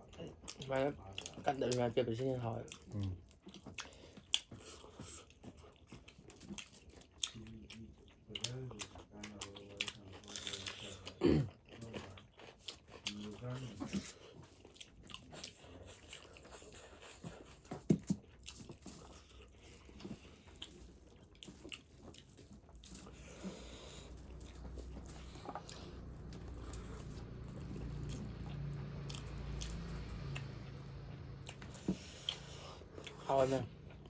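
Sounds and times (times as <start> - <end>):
chewing with wet smacks and crunches: 0.0 - 34.0
low steady rumble: 19.0 - 34.0.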